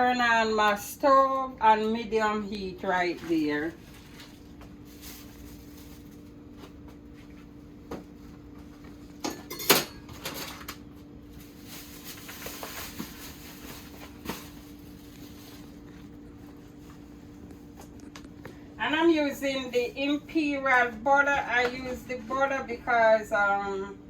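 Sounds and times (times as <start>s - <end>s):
steady low hum: 0.0s - 24.0s
cookware knocking and clattering: 9.2s - 10.6s.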